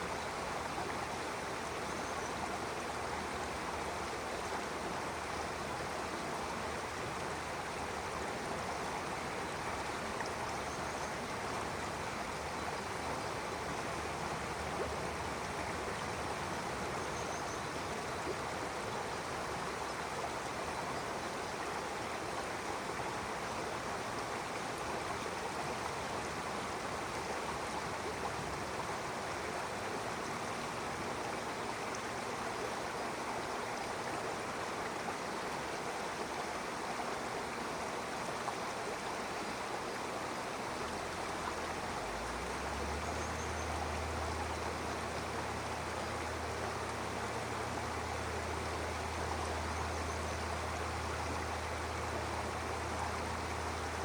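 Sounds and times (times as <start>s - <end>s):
stream water rushing: 0.0s - 54.0s.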